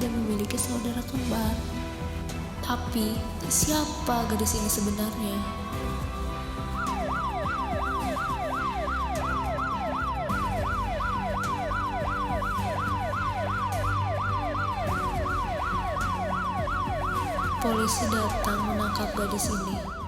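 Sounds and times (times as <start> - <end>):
low ambient music: 0.0 - 20.0
police siren yelping: 6.4 - 20.0.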